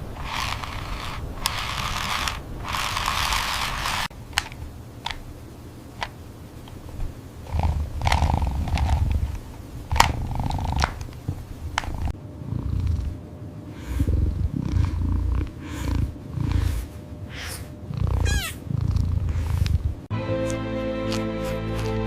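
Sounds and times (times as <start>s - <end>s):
cat purring: 0.0s - 4.1s, 7.4s - 20.1s
music: 20.1s - 22.0s.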